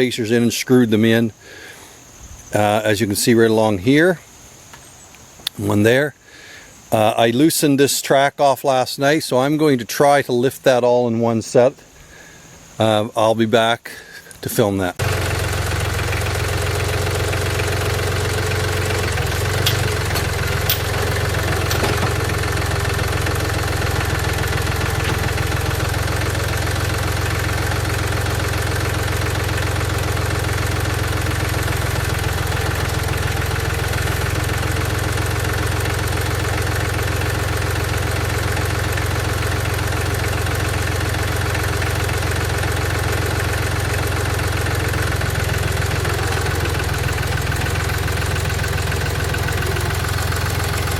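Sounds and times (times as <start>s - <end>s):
engine idling: 15.0s - 50.9s.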